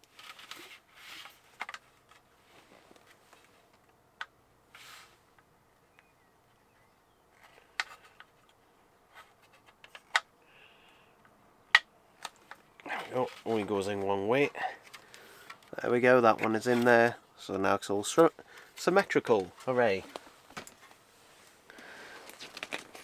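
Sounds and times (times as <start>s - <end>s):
short scraping rustles: 4.7s - 5.2s
plastic parts clicking: 9.2s - 10.3s, 11.2s - 13.4s, 14.8s - 15.8s.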